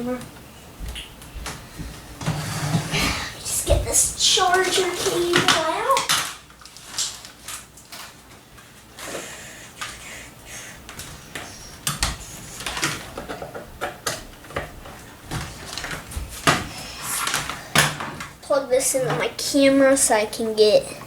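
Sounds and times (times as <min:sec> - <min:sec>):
cable handling knocks and rustles: 0:10.9 - 0:18.4.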